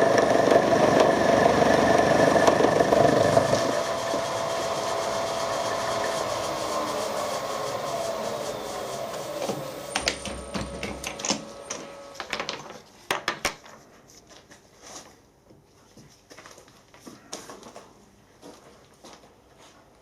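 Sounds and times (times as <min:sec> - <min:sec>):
machine spindle running down: 0:00.0 - 0:12.3.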